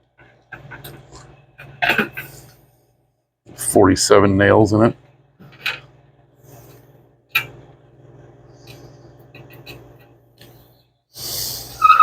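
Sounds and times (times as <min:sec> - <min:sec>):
steady low hum: 0:00.0 - 0:12.0
short hissing scrape: 0:11.2 - 0:12.0.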